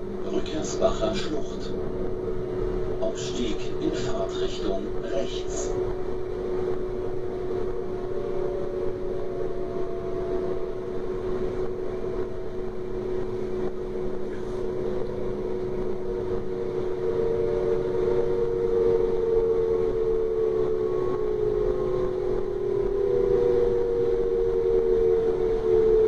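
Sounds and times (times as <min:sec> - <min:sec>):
electric whine: 0:00.0 - 0:26.0
train running sound: 0:02.9 - 0:06.4.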